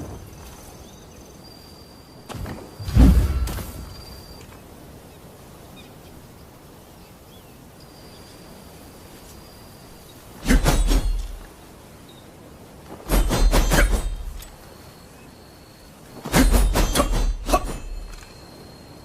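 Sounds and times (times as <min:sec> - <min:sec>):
sharp weapon strikes: 0:10.4 - 0:11.4, 0:16.2 - 0:18.0
faint high steady tone: 0:14.4 - 0:16.2, 0:17.5 - 0:19.0.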